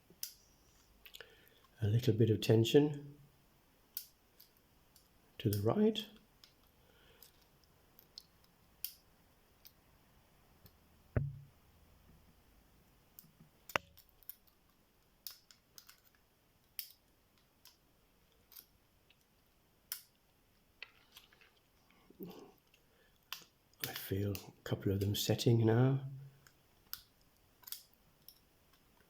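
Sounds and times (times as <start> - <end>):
lock pick metallic clicks: 3.9 - 5.6, 6.4 - 9.8, 15.2 - 17.8, 26.4 - 28.5.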